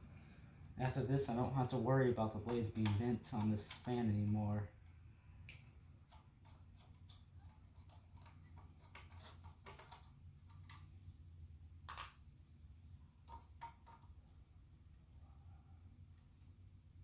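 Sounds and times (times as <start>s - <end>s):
low steady hum: 0.0s - 17.0s
screwdriver clicks and taps: 2.4s - 3.9s.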